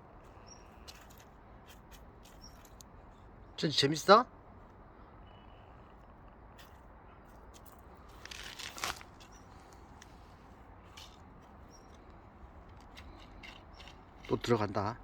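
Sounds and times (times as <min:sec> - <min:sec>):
rustling scuffle on ground: 0:06.6 - 0:11.9.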